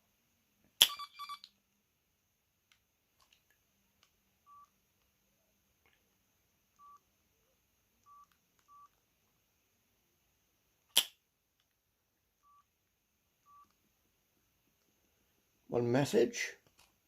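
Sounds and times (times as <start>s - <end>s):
phone keypad beeps: 0.9s - 1.5s, 4.5s - 4.7s, 6.8s - 7.0s, 8.1s - 8.9s, 12.4s - 12.7s, 13.4s - 13.7s.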